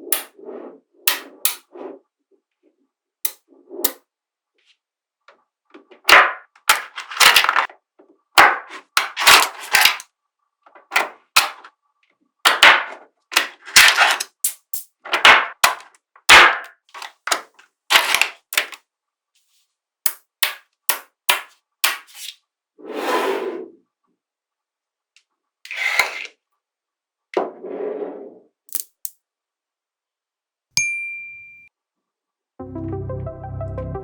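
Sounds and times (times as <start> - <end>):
magnetic balls snapping together: 13.4 - 15.9, 28.7 - 29.2.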